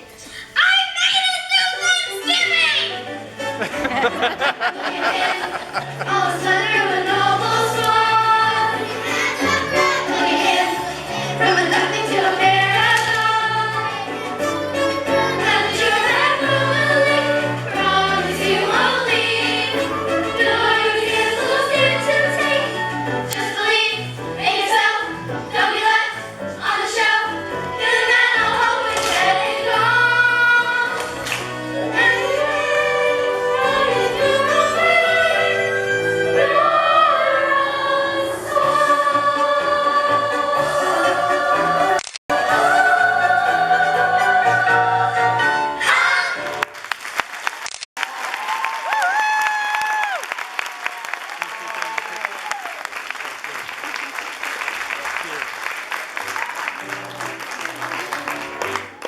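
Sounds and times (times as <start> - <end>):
instrumental accompaniment: 2.8 - 46.6
chorus of voices singing: 3.6 - 46.4.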